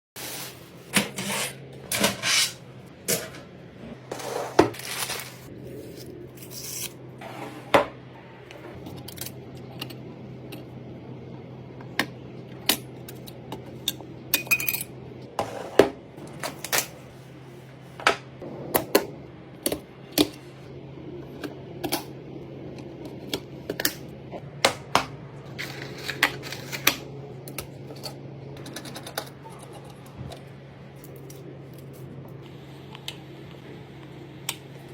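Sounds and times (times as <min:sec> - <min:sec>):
steady low hum: 0:00.2 - 0:34.9.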